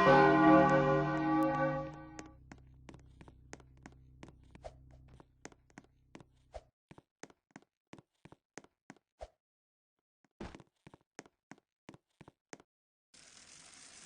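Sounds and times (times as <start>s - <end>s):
low steady hum: 0.0s - 6.1s.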